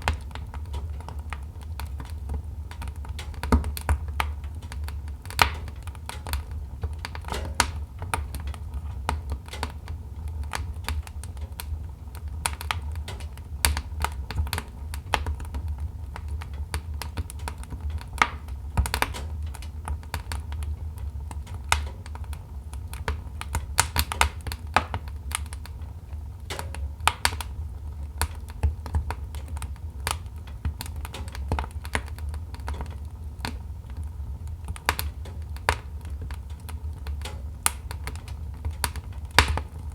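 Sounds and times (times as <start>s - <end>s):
low rumble of flames: 0.0s - 39.9s
wood fire crackling and popping: 0.0s - 39.9s.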